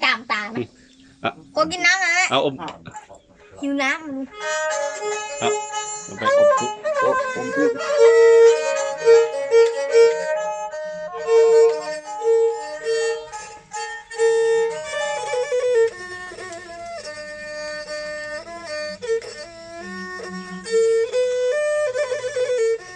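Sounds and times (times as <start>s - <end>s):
bowed fiddles playing melody: 0.0s - 22.9s.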